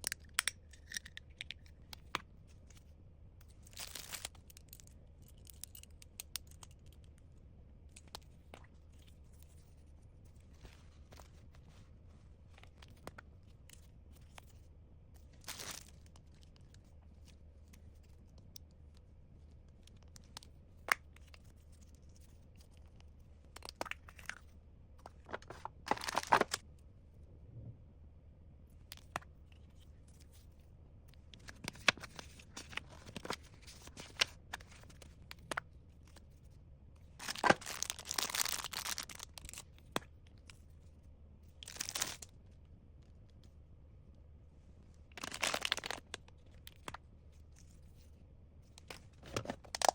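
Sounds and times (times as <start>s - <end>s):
packaging tearing and crinkling: 3.7s - 4.4s, 15.4s - 16.0s, 25.3s - 26.6s, 37.2s - 39.6s, 41.6s - 42.2s, 45.1s - 46.1s.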